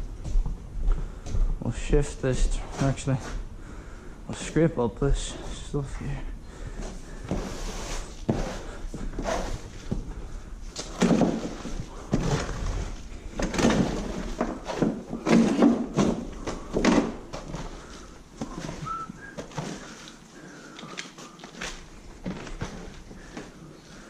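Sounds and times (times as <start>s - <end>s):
scraper blade scraping floor: 7.3s - 9.8s.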